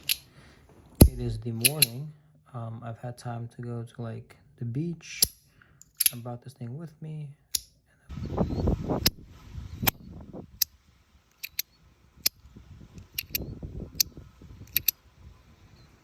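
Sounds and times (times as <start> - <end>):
low rumbling noise: 1.0 - 1.6
magnetic slider fidget clicking: 11.3 - 11.7, 13.0 - 13.4, 14.7 - 15.0.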